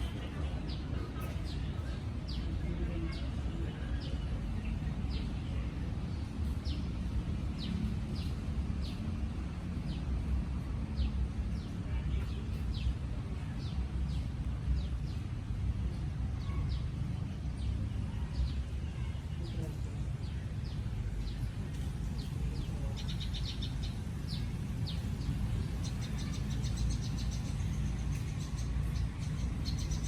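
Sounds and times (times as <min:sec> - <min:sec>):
bird chirping: 0:16.4 - 0:30.0.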